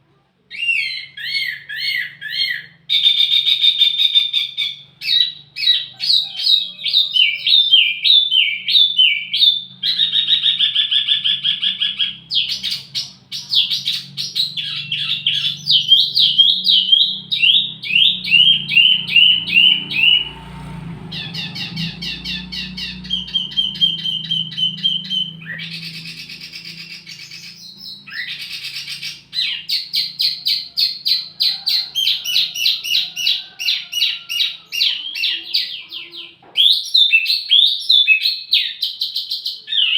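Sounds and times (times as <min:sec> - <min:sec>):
faint low hum: 0:00.0 - 0:36.3
songbird chirping and trilling: 0:00.0 - 0:39.9
buzzy bird note: 0:07.8 - 0:31.3.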